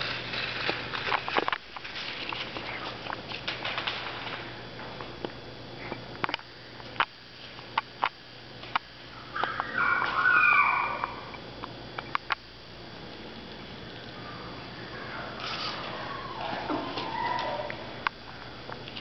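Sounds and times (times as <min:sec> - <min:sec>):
puppy whining: 0:15.2 - 0:17.9.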